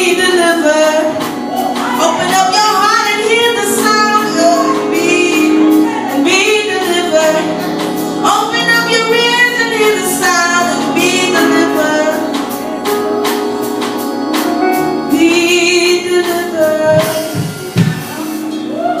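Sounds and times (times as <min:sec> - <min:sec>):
woman singing: 0:00.0 - 0:12.6, 0:15.0 - 0:17.8
instrumental accompaniment: 0:00.0 - 0:19.0
percussion beat: 0:01.1 - 0:02.5.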